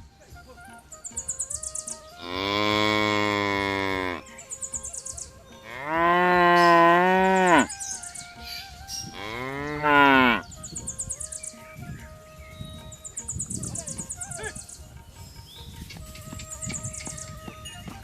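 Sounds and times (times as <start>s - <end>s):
cow mooing: 2.2s - 4.4s, 5.6s - 7.7s, 9.1s - 10.5s.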